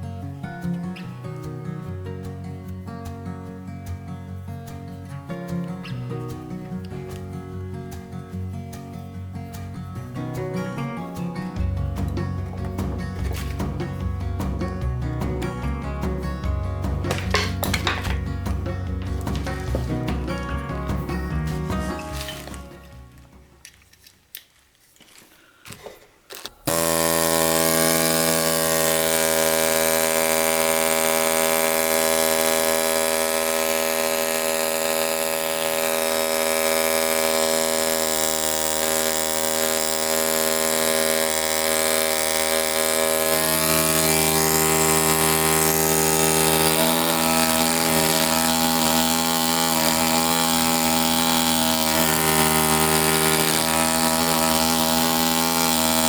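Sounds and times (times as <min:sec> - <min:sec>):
pneumatic air scribe buzzing: 0:09.5 - 0:23.6, 0:25.6 - 0:56.0.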